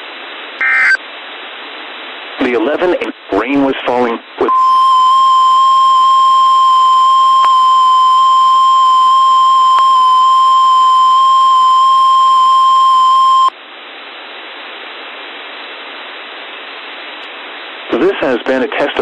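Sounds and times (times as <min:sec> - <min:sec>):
steady radio hiss: 0:00.0 - 0:19.0
high-pitched warning beep: 0:04.5 - 0:13.5.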